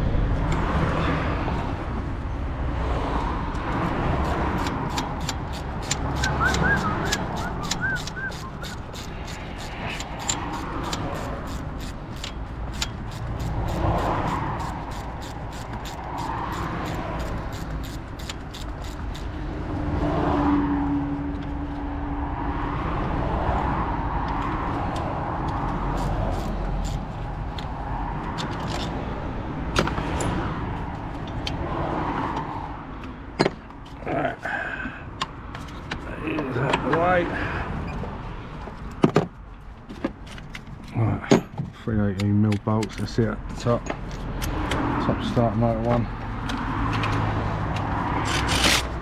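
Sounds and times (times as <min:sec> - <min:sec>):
ratchet wrench clicking: 0:04.2 - 0:19.4, 0:24.9 - 0:27.7, 0:46.4 - 0:49.0.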